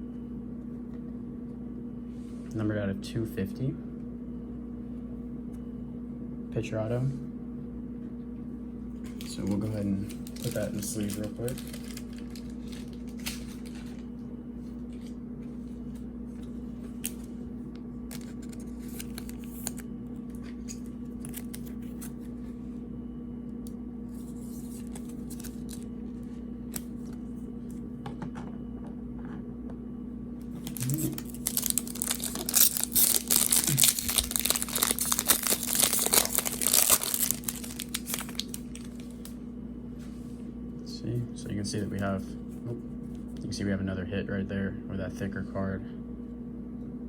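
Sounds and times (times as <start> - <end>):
foil pack crinkling: 9.0 - 15.2, 16.7 - 17.4, 18.1 - 22.4, 24.1 - 27.3, 30.4 - 39.4.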